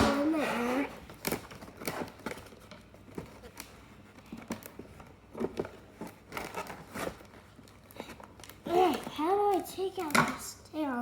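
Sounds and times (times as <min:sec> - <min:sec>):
plastic toy and packaging rustling: 0:00.0 - 0:11.0.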